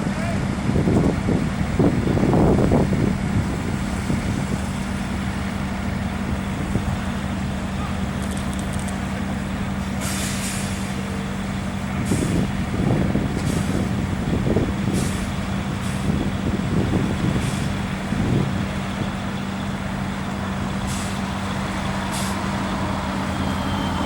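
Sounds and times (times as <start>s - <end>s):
diesel truck engine running: 0.0s - 24.0s
air release hiss: 10.0s - 11.0s, 22.1s - 22.5s.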